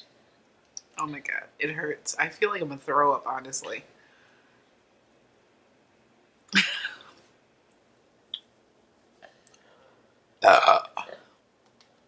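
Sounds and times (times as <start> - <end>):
person burping: 6.6 - 7.2, 10.4 - 11.3.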